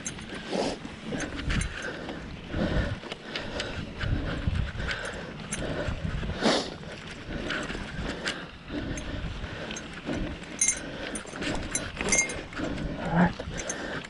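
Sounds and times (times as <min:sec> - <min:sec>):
bicycle rattling on rough trail: 0:00.0 - 0:14.0
wind rumbling on microphone: 0:00.0 - 0:14.0.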